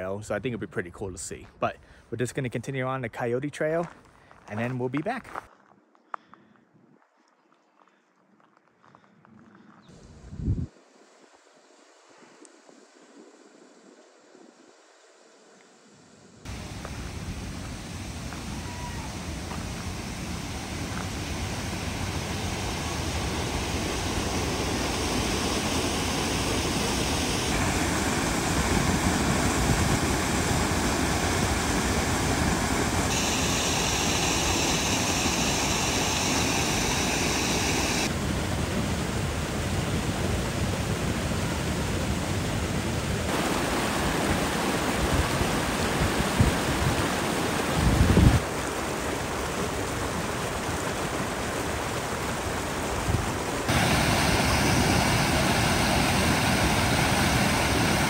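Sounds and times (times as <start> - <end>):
waterfall roaring: 16.5 - 58.0.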